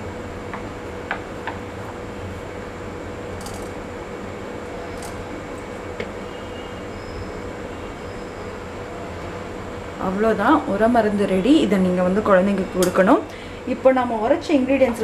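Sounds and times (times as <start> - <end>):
steady background hum: 0.0 - 15.0.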